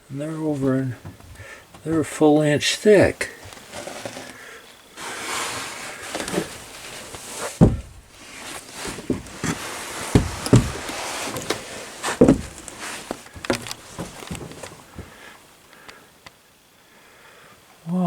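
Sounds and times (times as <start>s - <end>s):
rustling hiss: 0.0s - 18.0s
footsteps on wooden floorboards: 0.5s - 2.2s, 6.0s - 15.2s.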